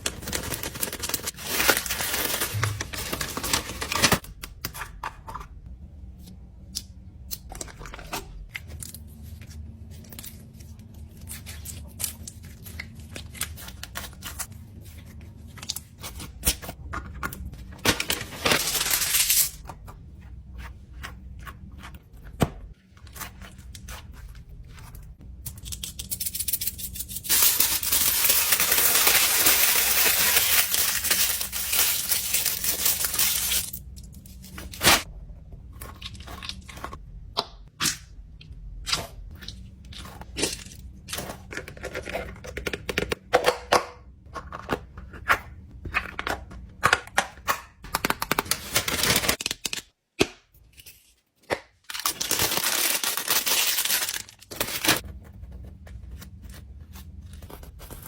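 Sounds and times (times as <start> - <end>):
crinkling and tearing: 27.3 - 33.8, 51.9 - 55.0.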